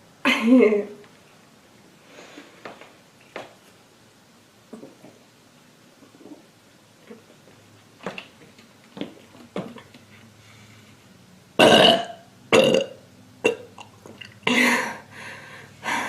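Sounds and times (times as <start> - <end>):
girl burping loudly: 11.6 - 13.9.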